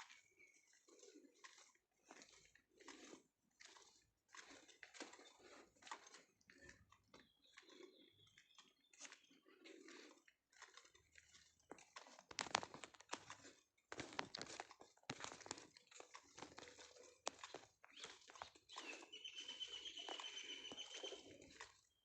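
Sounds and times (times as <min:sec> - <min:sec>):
crunching footsteps: 0:09.0 - 0:21.8.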